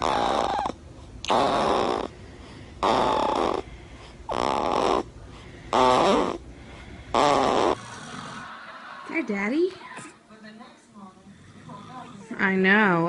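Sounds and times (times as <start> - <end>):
loud rhythmic snoring: 0.0 - 8.6, 11.3 - 12.6.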